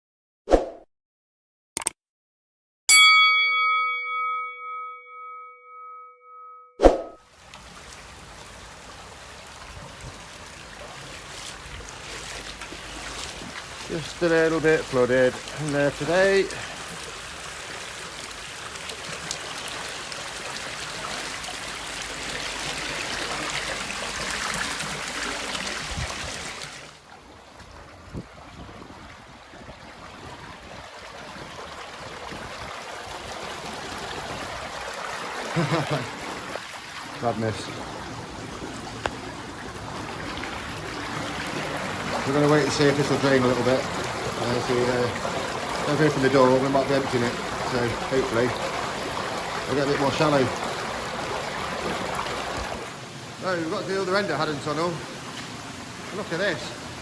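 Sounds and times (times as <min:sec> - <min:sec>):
bell-like chime ringing: 0:02.9 - 0:07.2
floodwater rushing and splashing: 0:06.8 - 0:57.0
low water rumble: 0:06.9 - 0:57.0.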